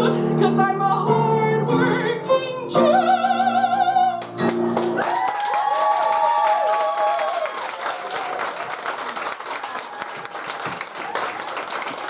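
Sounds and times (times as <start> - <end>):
audience applause: 4.8 - 12.0
audience whooping: 5.0 - 12.0.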